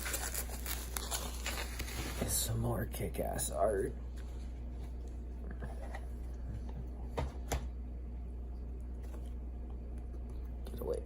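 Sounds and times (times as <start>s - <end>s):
paper and plastic packaging rustling: 0.0s - 2.6s
steady low hum: 0.0s - 11.0s.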